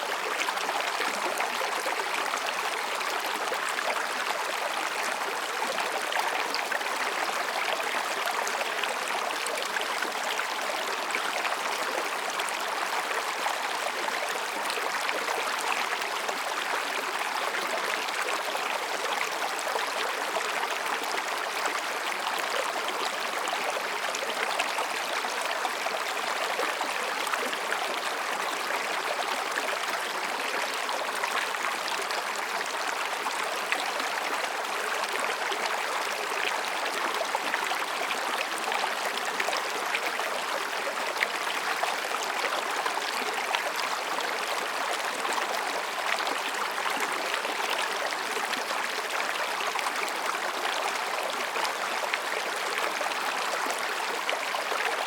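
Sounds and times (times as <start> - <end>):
stream babbling over rocks: 0.0 - 55.0.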